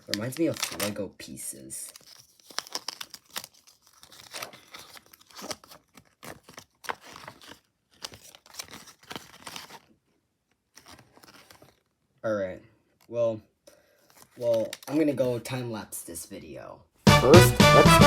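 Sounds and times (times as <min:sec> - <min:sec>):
plastic bags crinkling: 0:00.0 - 0:10.0, 0:10.6 - 0:12.0.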